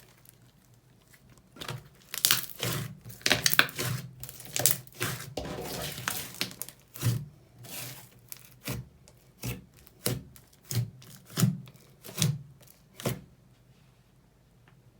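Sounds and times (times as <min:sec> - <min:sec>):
slime crackly rustle: 0:00.0 - 0:07.1
slime squelching by hand: 0:00.0 - 0:13.2.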